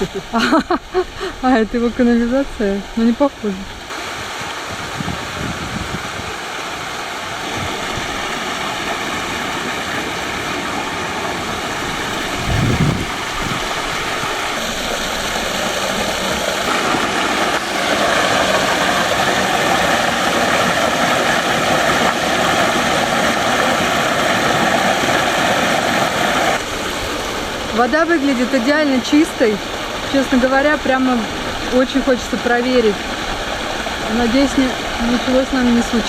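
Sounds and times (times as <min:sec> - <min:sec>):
stream water rushing: 0:03.7 - 0:36.0
low thump: 0:12.1 - 0:14.1.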